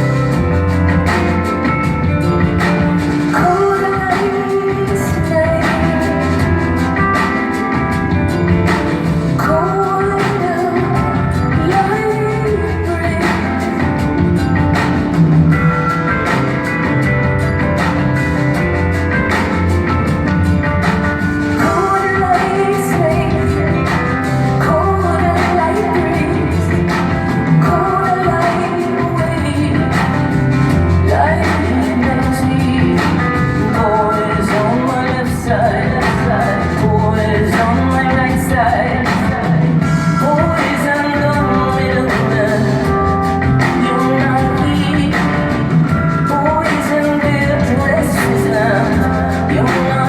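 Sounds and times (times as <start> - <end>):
bass line: 0.0 - 50.0
steady drum beat: 0.0 - 50.0
sustained keyboard or guitar chords: 0.0 - 50.0
woman singing lead: 0.0 - 50.0.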